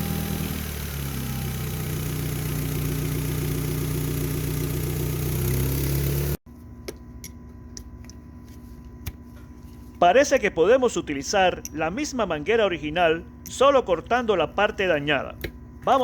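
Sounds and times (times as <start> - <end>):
car engine running: 0.0 - 6.4.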